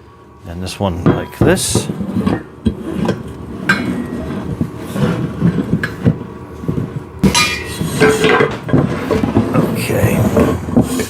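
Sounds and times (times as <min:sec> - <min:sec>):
ringing metal clatter: 0:07.2 - 0:09.2
steel frame pieces clanking: 0:07.2 - 0:09.4.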